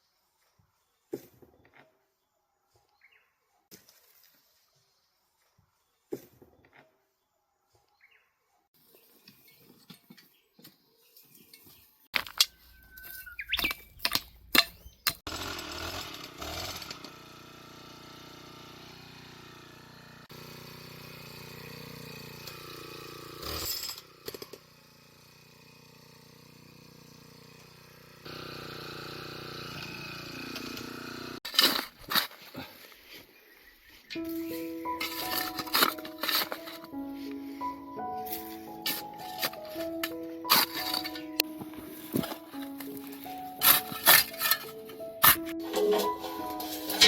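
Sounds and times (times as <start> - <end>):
outdoor ambience: 0.0 - 47.0
hand tools knocking and scraping: 9.2 - 15.3, 34.1 - 37.0, 38.2 - 47.0.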